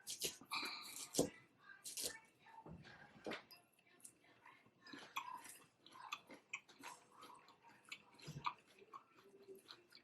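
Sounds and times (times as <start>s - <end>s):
chewing crunches and clicks: 4.9s - 10.0s.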